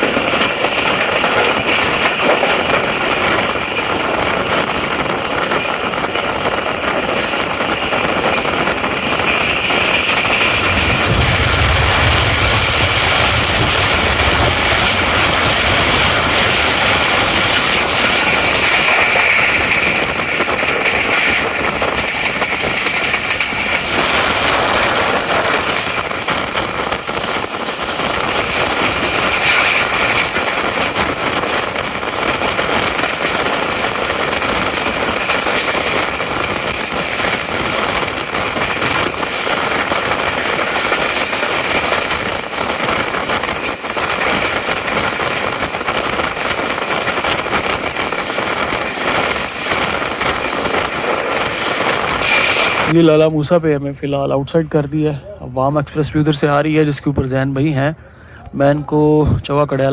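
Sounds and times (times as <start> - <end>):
train noise from on board: 0.0 - 56.9.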